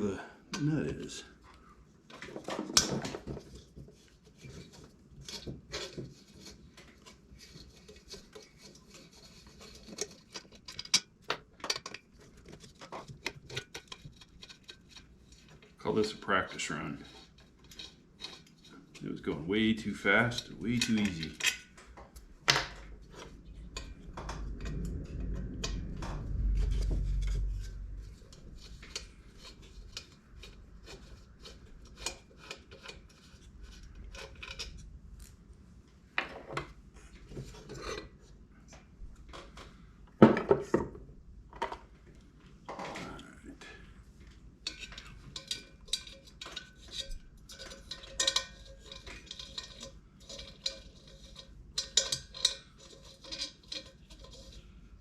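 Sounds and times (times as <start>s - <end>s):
metal parts clinking and tapping: 9.3s - 15.5s, 44.6s - 54.6s
low rumble: 22.8s - 29.8s.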